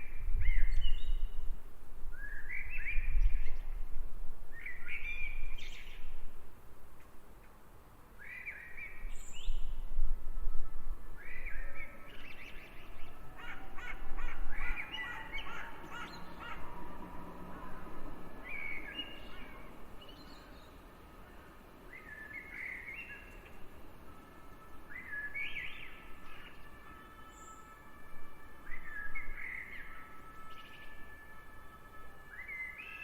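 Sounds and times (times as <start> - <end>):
birds calling: 11.6 - 20.8.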